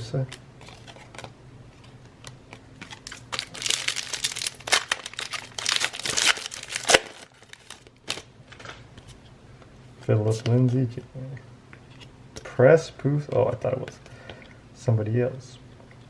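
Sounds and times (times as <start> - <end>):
foil wrapper crinkling and tearing: 2.2 - 8.8.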